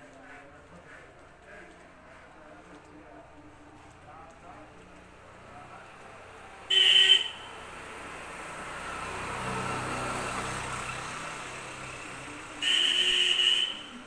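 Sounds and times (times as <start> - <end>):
loud horn honks: 6.7 - 7.5, 12.6 - 14.0
vehicle passing by: 7.4 - 12.7.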